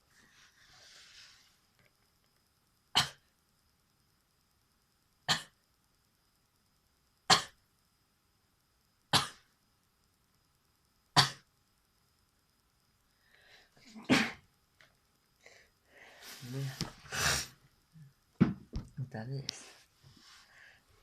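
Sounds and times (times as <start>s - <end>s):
person sneezing: 3.0s - 3.2s, 11.2s - 11.4s, 13.8s - 14.4s.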